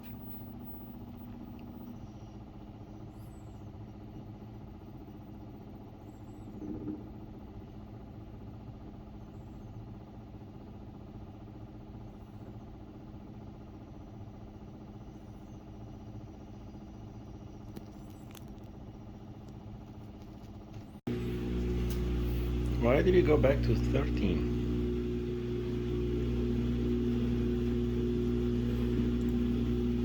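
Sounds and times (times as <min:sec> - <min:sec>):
washing machine motor hum: 0:00.0 - 0:30.0.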